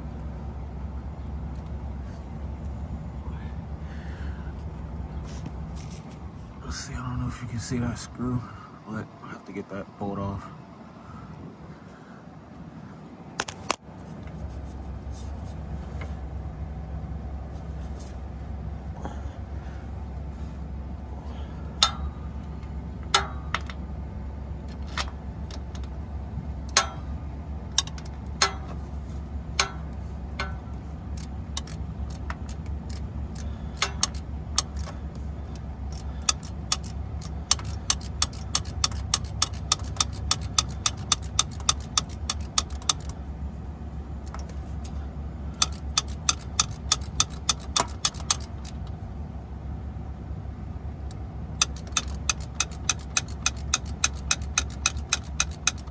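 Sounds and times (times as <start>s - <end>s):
steady low hum: 0.0s - 55.9s
socket ratchet clicking: 27.8s - 28.8s, 31.2s - 43.2s, 44.2s - 49.0s, 51.1s - 55.9s.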